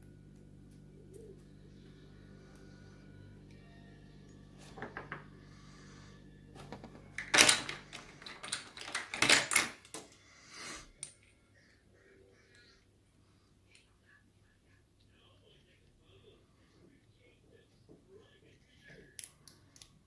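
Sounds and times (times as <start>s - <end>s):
padlock clicking and rattling: 7.2s - 10.0s.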